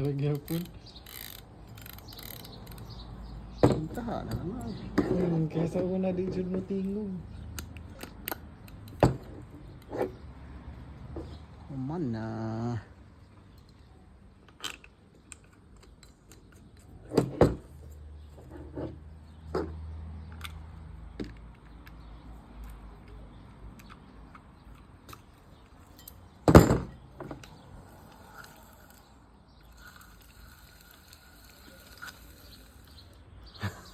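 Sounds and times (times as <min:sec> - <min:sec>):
objects clicking and knocking: 0:14.4 - 0:33.9
loud thump: 0:26.5 - 0:27.4.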